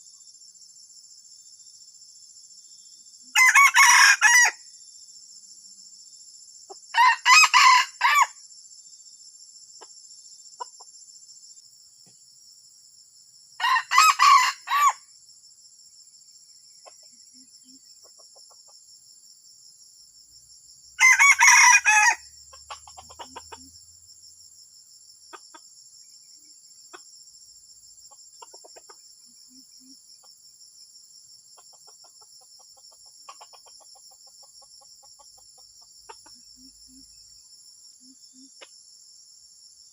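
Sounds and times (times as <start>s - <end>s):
junglefowl crowing: 3.3s - 4.6s, 6.9s - 8.3s, 13.6s - 15.0s, 21.0s - 23.6s.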